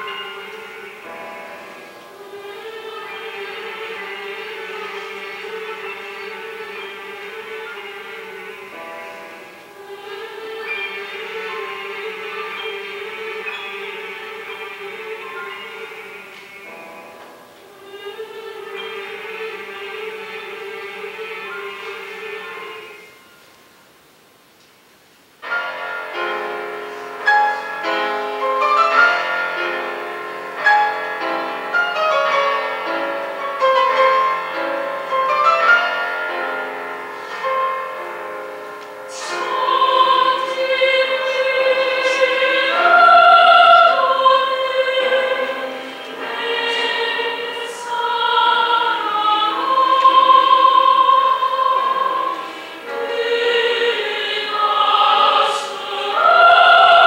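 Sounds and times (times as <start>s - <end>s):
choir singing: 0.0s - 23.5s, 25.4s - 57.0s
piano: 0.0s - 57.0s.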